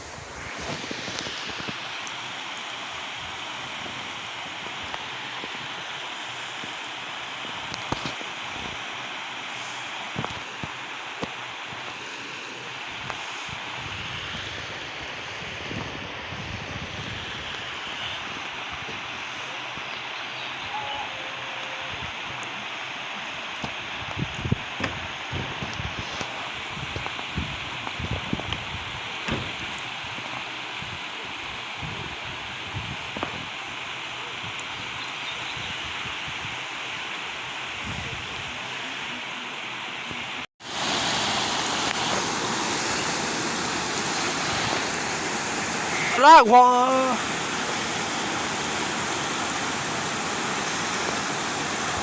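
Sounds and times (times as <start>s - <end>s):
waterfall rushing: 0.0s - 24.0s, 39.2s - 52.0s.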